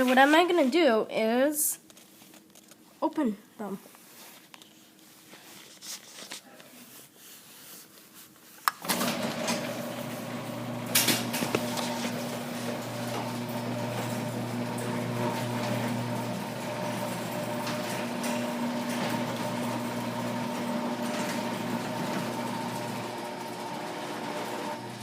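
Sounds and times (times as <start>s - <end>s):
garage door opener motor hum: 8.8s - 25.0s.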